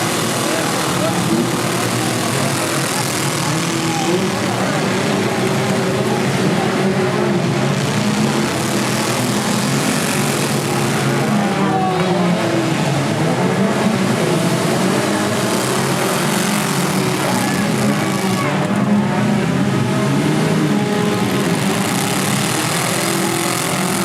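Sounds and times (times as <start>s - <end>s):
car engines revving: 0.0s - 24.0s.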